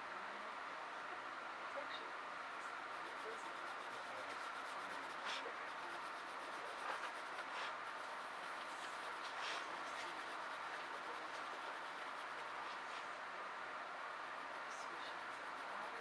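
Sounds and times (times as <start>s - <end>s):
pencil scratching on paper: 2.9s - 13.2s, 14.5s - 16.0s.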